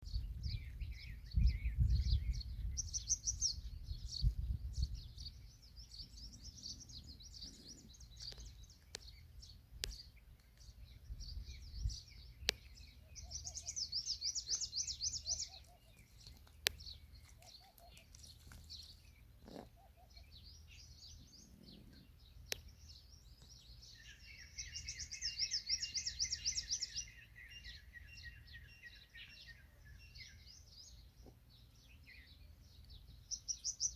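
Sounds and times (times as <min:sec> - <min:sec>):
low wind-like rumble: 0:00.0 - 0:15.4
birds chirping and trilling: 0:00.0 - 0:33.9.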